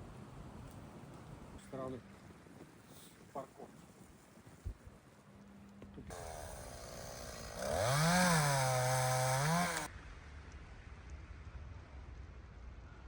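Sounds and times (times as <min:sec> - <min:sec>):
chainsaw revving: 0:06.1 - 0:09.9.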